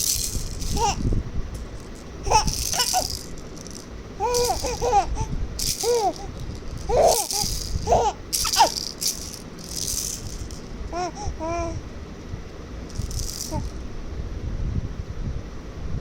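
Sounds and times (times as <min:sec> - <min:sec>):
baby rattle shaking: 0:00.0 - 0:11.7, 0:12.9 - 0:13.9
baby babbling: 0:00.3 - 0:01.1, 0:02.2 - 0:03.3, 0:04.2 - 0:09.3, 0:10.9 - 0:11.8, 0:13.4 - 0:13.8.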